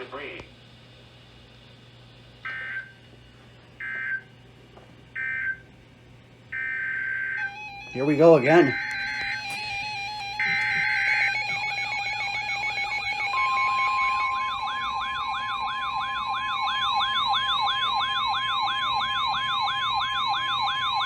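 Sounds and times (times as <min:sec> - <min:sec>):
steady warning tone: 0:00.0 - 0:04.4, 0:05.1 - 0:21.0
warbling electronic alert siren: 0:06.5 - 0:21.0
buzzing digital data squawk: 0:06.6 - 0:21.0.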